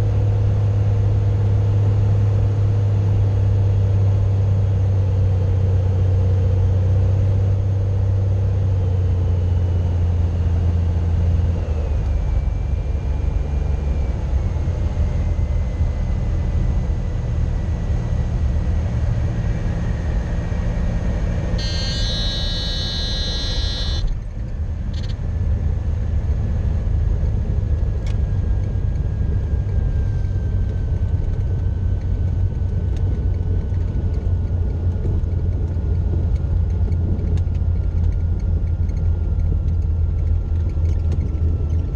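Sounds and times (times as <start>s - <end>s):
airplane engine and propeller droning: 0.0s - 41.9s
rumble of plane rollout: 0.0s - 41.9s
high stall-warning horn: 21.6s - 24.1s.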